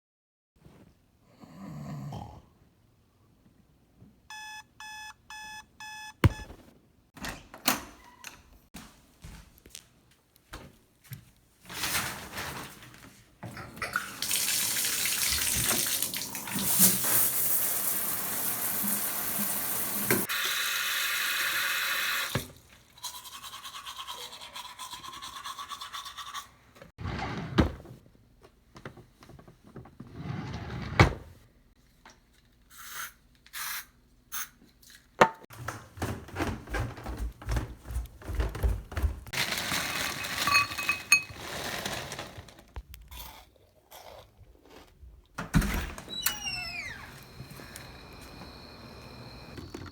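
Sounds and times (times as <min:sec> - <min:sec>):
toothbrush scrubbing: 0:23.0 - 0:26.6.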